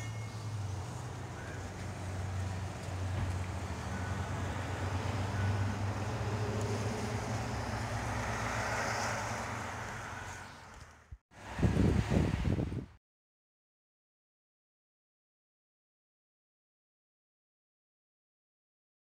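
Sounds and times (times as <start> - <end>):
wind buffeting microphone: 11.4 - 13.0.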